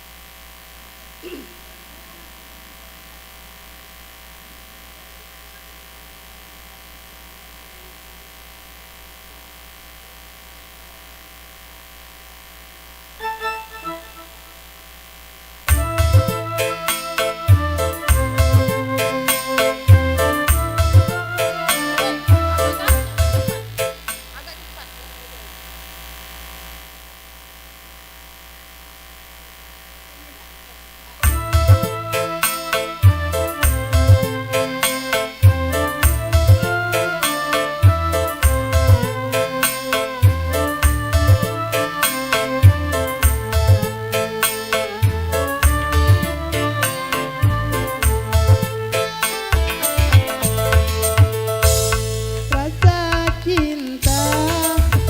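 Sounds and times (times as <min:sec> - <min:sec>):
electrical mains hum and buzz: 0:00.0 - 0:55.0
electronic keyboard notes: 0:15.7 - 0:24.8, 0:31.2 - 0:55.0
dangdut music: 0:15.7 - 0:24.9, 0:31.2 - 0:55.0.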